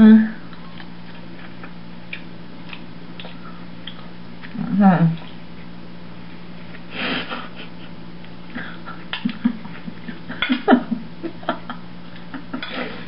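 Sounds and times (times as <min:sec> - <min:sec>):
low steady hum: 0:00.0 - 0:13.0
person chewing: 0:00.4 - 0:04.6.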